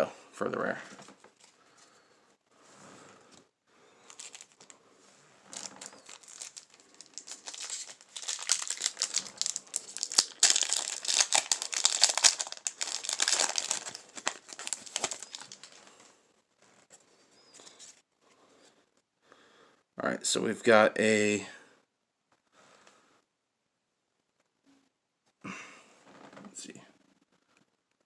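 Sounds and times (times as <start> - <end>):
foil wrapper crinkling and tearing: 4.1 - 4.8, 5.5 - 15.9.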